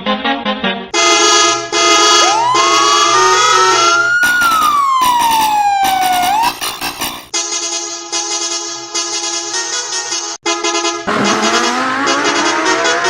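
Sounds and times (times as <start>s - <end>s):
vehicle horn blasts: 1.0s - 3.2s
siren winding up and down: 1.8s - 7.3s, 11.1s - 13.0s.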